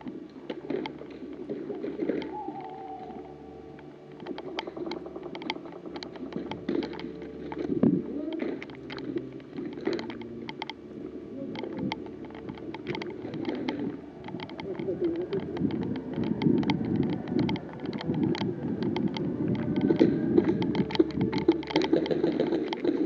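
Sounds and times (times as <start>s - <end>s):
low rumbling background noise: 0.0s - 23.0s
sharp clicks and crackles: 0.0s - 23.0s.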